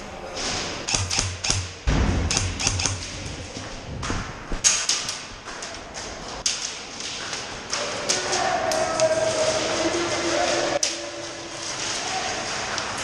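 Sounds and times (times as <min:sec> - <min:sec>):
airsoft guns firing: 0:00.9 - 0:03.1.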